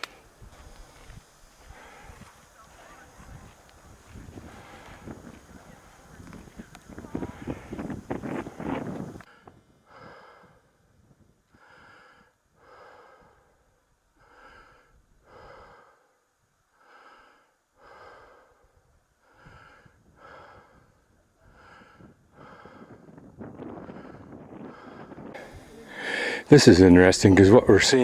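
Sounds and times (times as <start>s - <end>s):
person breathing: 0.0s - 2.4s, 4.3s - 5.5s, 7.2s - 10.9s, 11.5s - 26.6s.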